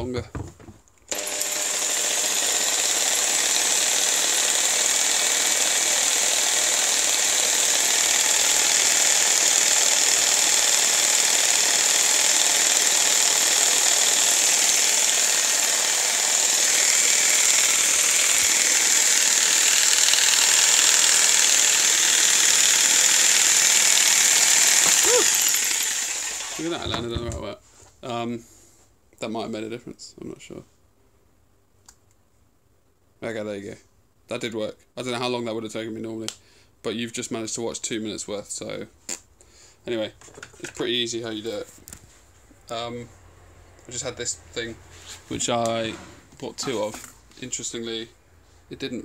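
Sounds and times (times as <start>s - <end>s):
jigsaw buzzing rattle: 1.1s - 27.1s.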